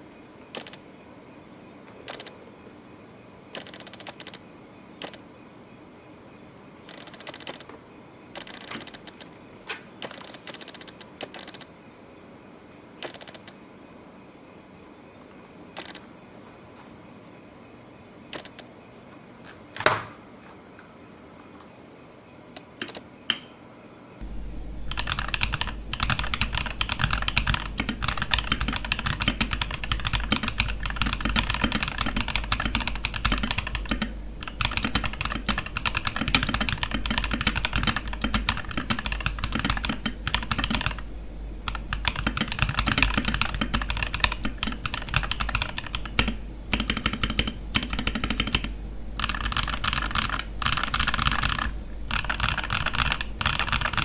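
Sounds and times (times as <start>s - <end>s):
mechanical keyboard typing: 24.2s - 54.0s.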